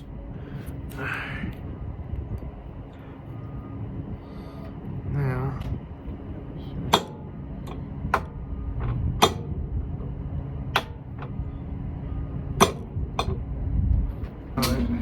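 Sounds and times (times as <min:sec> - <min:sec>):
steady low hum: 0:00.0 - 0:15.0
hand tools clicking and knocking: 0:07.0 - 0:08.4, 0:09.2 - 0:09.5, 0:12.6 - 0:13.4.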